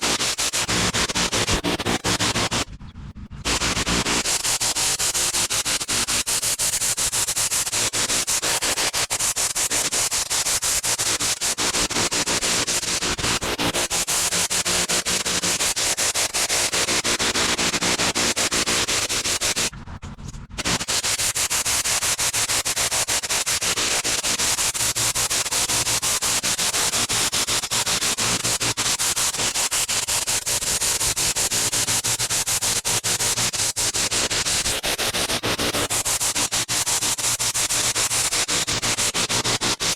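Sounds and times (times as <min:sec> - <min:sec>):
water spray hissing on concrete: 0:00.0 - 0:02.6, 0:20.6 - 0:39.9.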